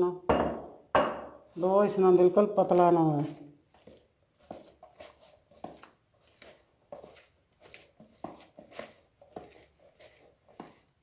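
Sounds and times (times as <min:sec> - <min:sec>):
dough squishing and slapping: 0:02.4 - 0:11.0.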